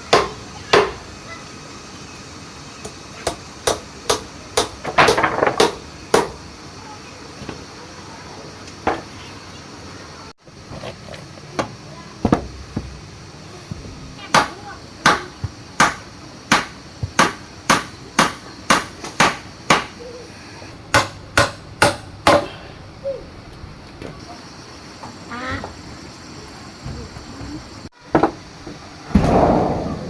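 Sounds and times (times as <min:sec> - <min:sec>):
hand tool striking: 0:13.7 - 0:20.0, 0:20.9 - 0:22.6.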